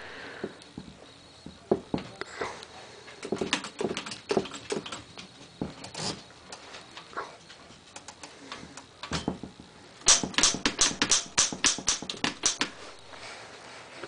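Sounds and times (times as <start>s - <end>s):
typewriter key strikes: 10.1s - 12.8s.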